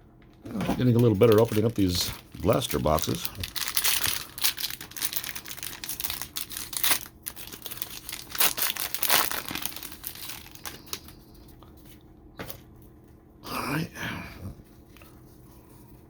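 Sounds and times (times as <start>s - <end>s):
plastic wrapping crinkling and tearing: 0.7s - 11.4s.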